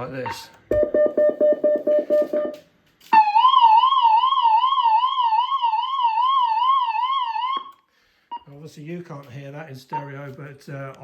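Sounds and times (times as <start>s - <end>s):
short electronic pips: 0.3s - 2.6s
warbling electronic warning tone: 0.7s - 2.6s.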